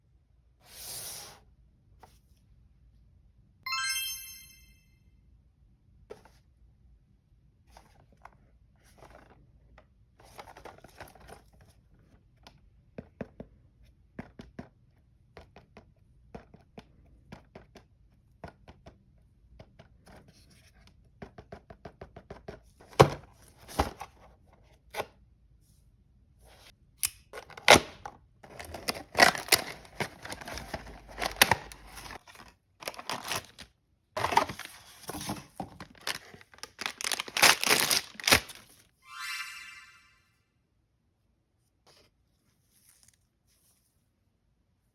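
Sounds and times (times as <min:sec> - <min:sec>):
wrapping tearing and crinkling: 0:28.5 - 0:34.7, 0:35.8 - 0:38.7.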